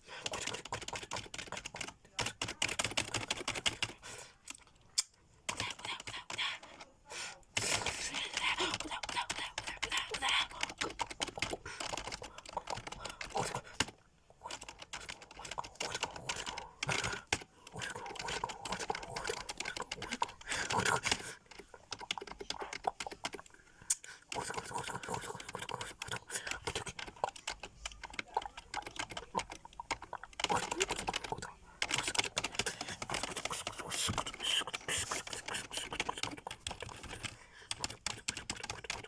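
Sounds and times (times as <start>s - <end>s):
keyboard typing clicks: 0.2s - 4.7s, 5.5s - 6.9s, 7.6s - 39.0s.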